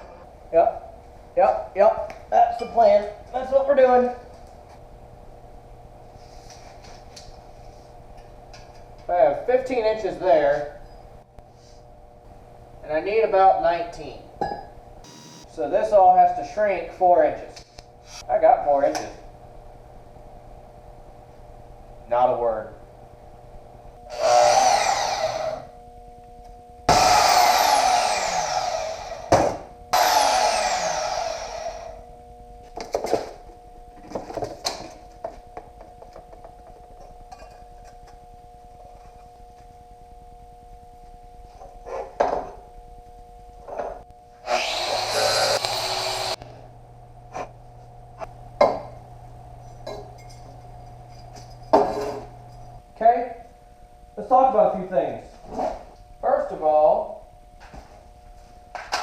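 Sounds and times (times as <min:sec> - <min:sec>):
steady hum: 0:00.0 - 0:59.0
power grinder: 0:15.1 - 0:15.5, 0:24.1 - 0:25.7, 0:26.9 - 0:29.3, 0:30.0 - 0:32.0, 0:44.4 - 0:46.4.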